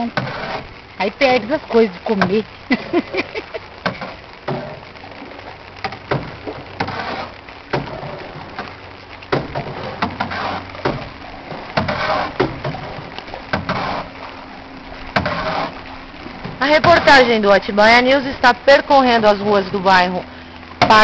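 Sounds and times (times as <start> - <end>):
water splashing around boat: 0.0 - 21.0
wood knocking against hull: 3.8 - 4.9, 5.8 - 14.2, 15.1 - 17.2.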